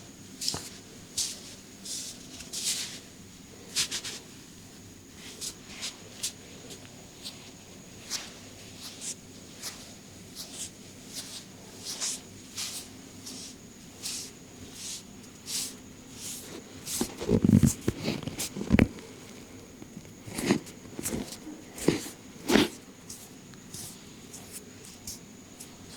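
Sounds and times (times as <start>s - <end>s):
hands rubbing hair and skin: 5.2s - 25.9s.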